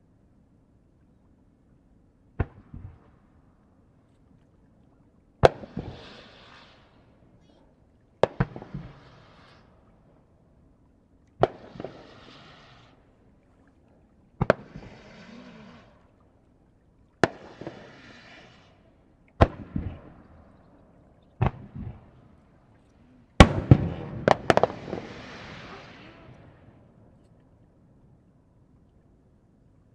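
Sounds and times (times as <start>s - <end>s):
fireworks shells bursting: 23.4s - 26.2s.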